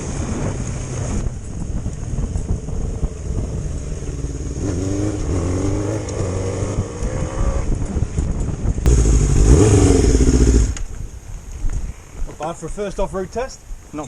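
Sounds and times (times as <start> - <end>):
dirt bike engine revving: 2.9 - 7.6, 8.9 - 10.8.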